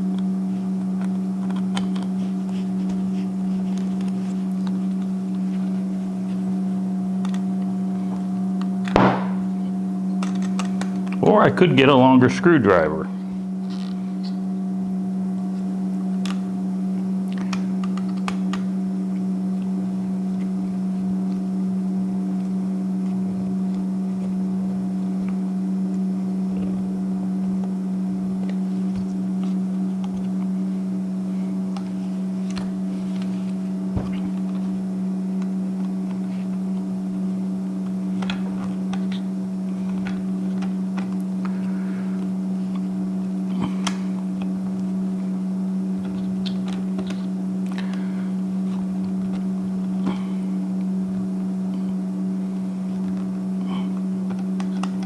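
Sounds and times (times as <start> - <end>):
steady hum: 0.0 - 55.0.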